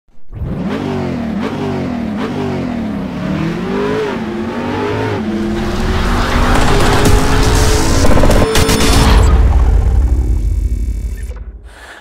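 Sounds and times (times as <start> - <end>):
car engine accelerating hard: 0.3 - 8.5.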